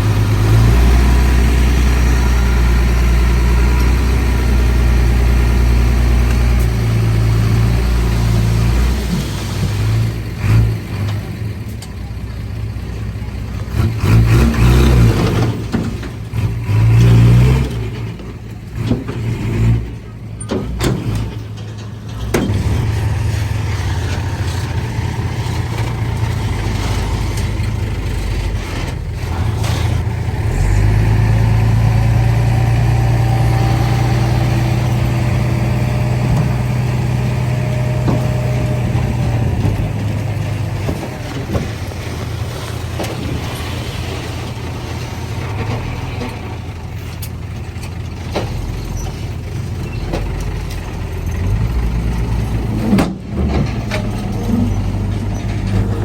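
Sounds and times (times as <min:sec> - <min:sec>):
heavy diesel engine under load: 0:00.0 - 0:56.0
engine knocks: 0:17.6 - 0:29.6, 0:33.8 - 0:56.0.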